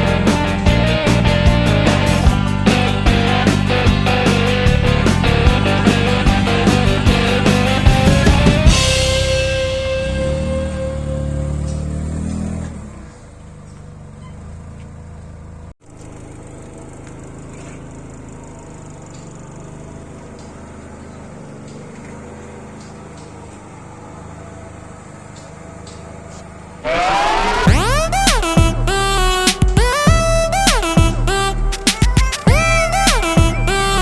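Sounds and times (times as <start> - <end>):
music: 0.0 - 11.0, 27.7 - 34.0
car engine idling: 0.0 - 34.0.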